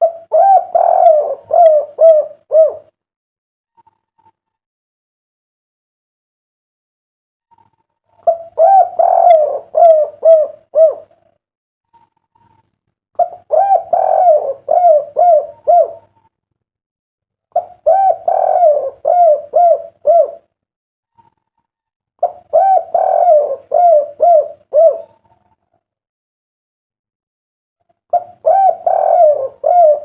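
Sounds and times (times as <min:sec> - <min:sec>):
dove cooing: 0:00.0 - 0:03.0, 0:08.2 - 0:11.3, 0:13.2 - 0:16.2, 0:17.5 - 0:20.5, 0:22.2 - 0:25.5, 0:28.1 - 0:30.0.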